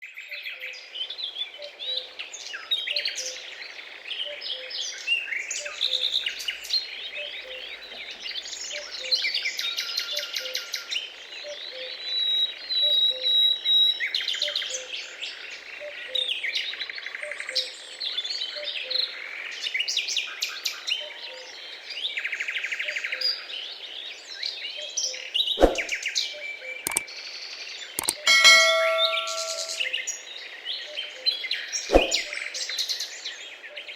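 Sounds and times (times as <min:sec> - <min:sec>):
sharp clicks: 0:28.0 - 0:29.8.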